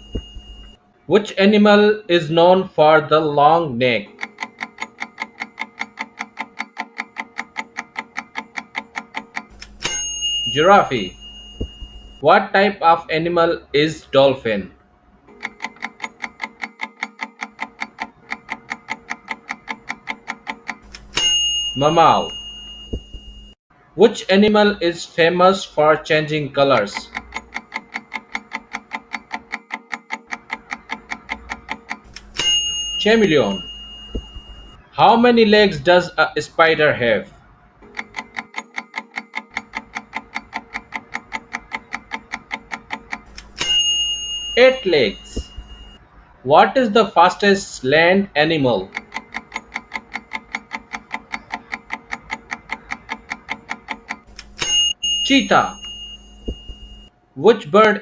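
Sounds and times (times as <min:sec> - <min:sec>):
bell-like ding: 0:00.0 - 0:00.8, 0:09.8 - 0:12.1, 0:21.2 - 0:23.5, 0:32.4 - 0:34.8, 0:43.6 - 0:46.0, 0:54.6 - 0:57.0
clock ticking quickly: 0:04.0 - 0:12.2, 0:15.3 - 0:22.4, 0:26.7 - 0:34.8, 0:37.8 - 0:46.0, 0:48.4 - 0:56.8.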